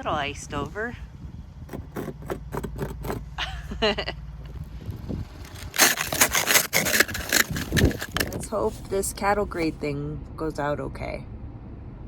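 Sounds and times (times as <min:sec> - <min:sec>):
vehicle engine running low: 0:00.0 - 0:12.0
icy snow crunching: 0:05.2 - 0:08.9.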